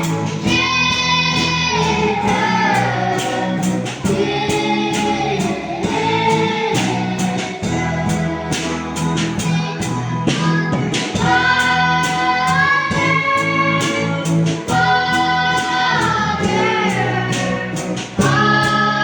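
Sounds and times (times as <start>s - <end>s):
plucked guitar: 0.0s - 19.0s
person singing: 10.5s - 19.0s.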